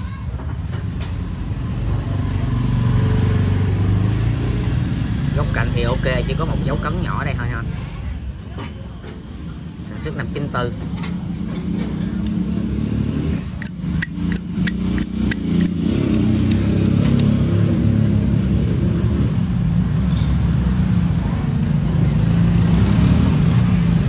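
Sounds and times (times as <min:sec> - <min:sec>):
traffic rumble: 0:00.0 - 0:24.0
sharp handling clicks: 0:13.6 - 0:17.3.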